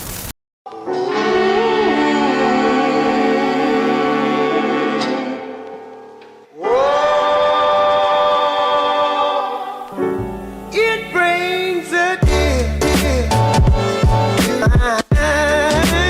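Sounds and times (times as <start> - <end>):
choir-like sung chord: 0.7 - 10.2
gliding vocal melody over bass: 0.8 - 5.7, 6.6 - 16.0
music beat: 12.2 - 16.0.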